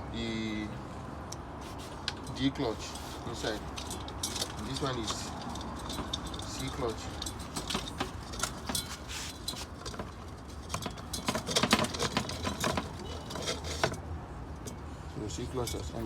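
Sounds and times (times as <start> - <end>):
metal clinking and scraping: 1.8 - 16.0
cluster of metal clicks: 3.6 - 14.9.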